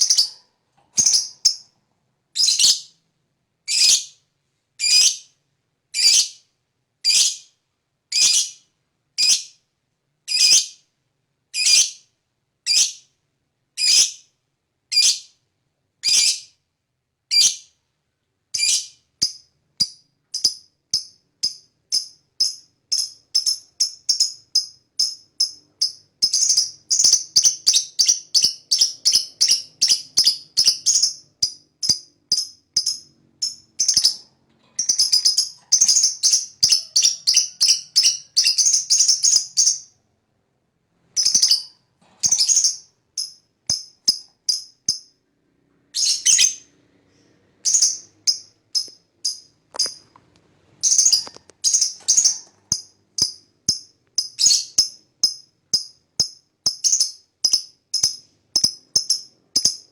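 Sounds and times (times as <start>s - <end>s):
lovebird calling and chattering: 0.0s - 0.4s, 1.0s - 1.6s, 2.4s - 2.9s, 3.7s - 4.1s, 4.8s - 5.3s, 6.0s - 6.4s, 7.0s - 7.4s, 8.1s - 8.6s, 10.3s - 10.8s, 18.6s - 39.9s, 41.2s - 45.1s, 46.0s - 46.7s, 47.6s - 50.1s, 50.8s - 59.9s.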